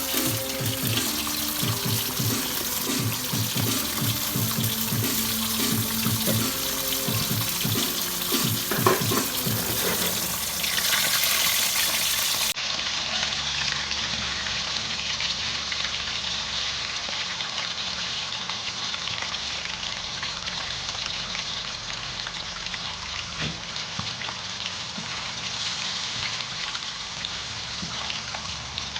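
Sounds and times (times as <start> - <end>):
rushing hiss of kitchen cooking: 0.0 - 28.9
kitchen clatters: 5.0 - 12.5.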